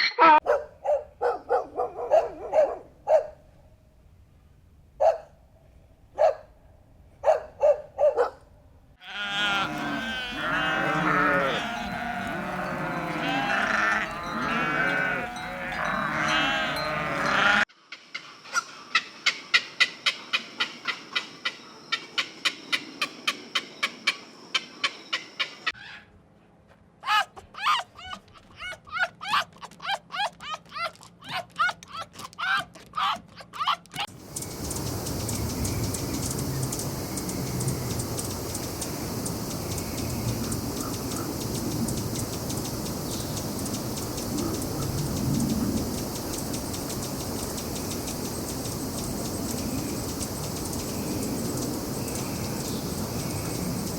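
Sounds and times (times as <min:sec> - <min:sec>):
livestock bleating: 0:09.0 - 0:17.6.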